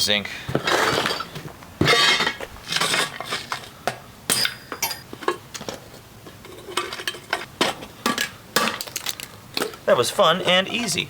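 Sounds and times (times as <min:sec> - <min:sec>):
scrap metal clinking and clattering: 0:00.5 - 0:11.0.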